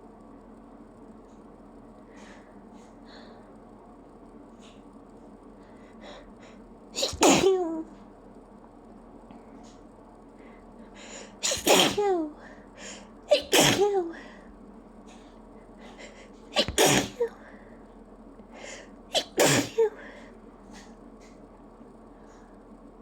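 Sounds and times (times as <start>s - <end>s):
person sneezing: 7.0s - 7.8s, 11.4s - 12.4s, 13.3s - 14.3s, 16.6s - 17.4s, 19.1s - 20.1s.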